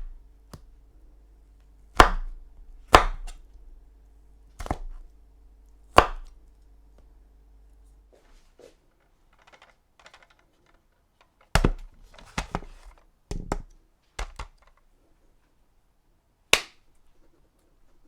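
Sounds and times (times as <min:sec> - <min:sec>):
knife chopping on cutting board: 0:01.9 - 0:03.4, 0:04.6 - 0:05.0, 0:05.9 - 0:06.4.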